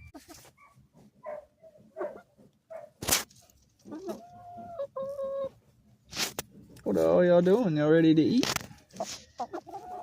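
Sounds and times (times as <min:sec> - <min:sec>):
chickens clucking: 0:00.0 - 0:02.8, 0:03.5 - 0:06.9, 0:08.5 - 0:10.0.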